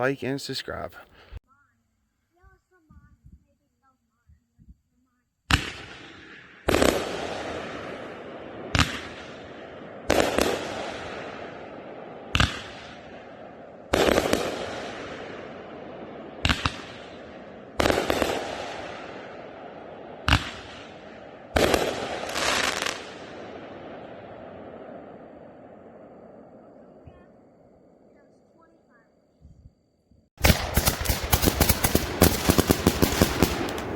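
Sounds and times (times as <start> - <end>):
firework crackle: 5.5 - 8.0, 13.9 - 15.4, 17.8 - 19.3, 20.2 - 23.4, 30.4 - 33.9
firework shots breaking: 5.5 - 13.3, 13.9 - 15.6, 16.4 - 19.4, 20.2 - 23.6, 30.4 - 33.9.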